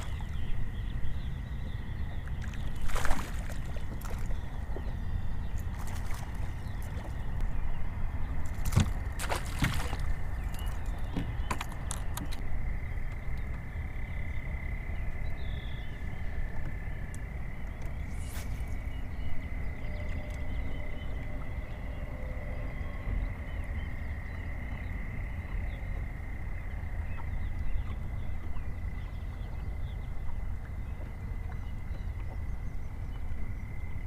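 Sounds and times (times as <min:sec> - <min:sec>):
steady low rumble: 0:00.0 - 0:34.0
fishing tackle clicks and knocks: 0:10.8 - 0:12.4.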